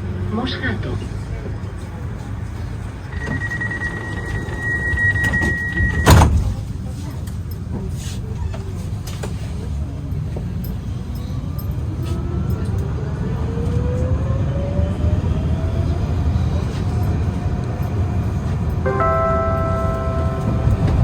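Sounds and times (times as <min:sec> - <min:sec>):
tram running rumble: 0:00.0 - 0:21.0
multi-tone chime: 0:18.9 - 0:21.0.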